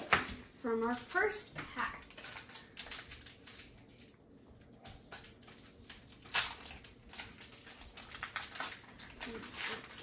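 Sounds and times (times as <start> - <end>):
foil wrapper crinkling and tearing: 2.0 - 10.0.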